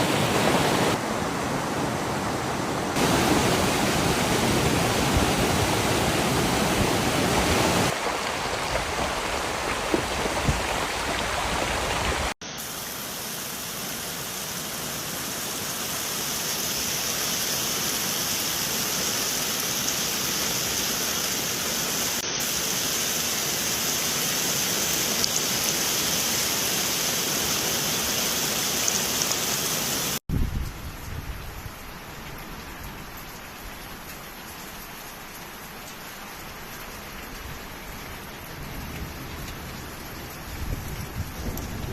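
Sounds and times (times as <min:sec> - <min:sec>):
steady rain: 0:00.0 - 0:41.9
running water: 0:02.7 - 0:30.2.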